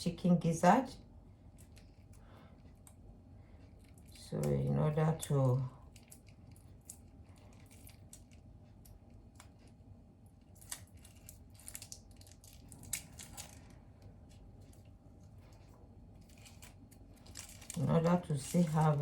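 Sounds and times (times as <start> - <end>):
low background hum: 0.0 - 19.0.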